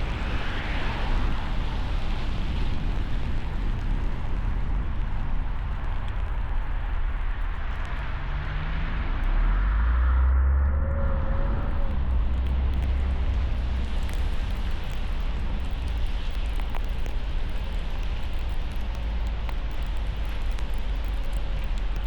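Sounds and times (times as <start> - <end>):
car engine and road noise: 6.0 - 17.5
faint rising whine: 7.3 - 15.7.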